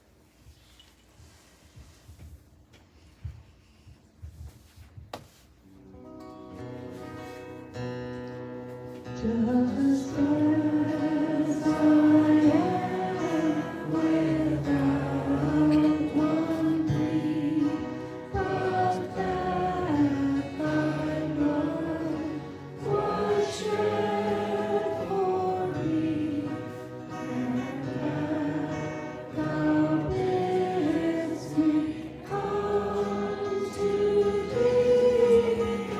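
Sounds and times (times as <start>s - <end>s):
group singing a slow hymn: 9.0s - 35.9s.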